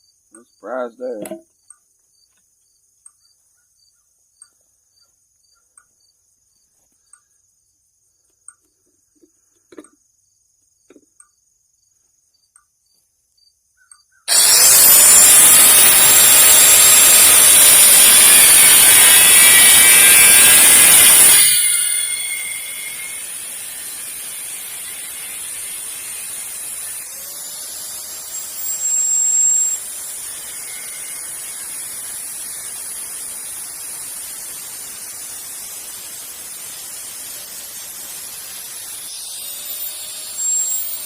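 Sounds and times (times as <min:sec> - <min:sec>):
crickets chirping: 0:00.0 - 0:14.3, 0:15.8 - 0:27.9, 0:28.7 - 0:41.0
power tool grinding steel: 0:14.3 - 0:41.0.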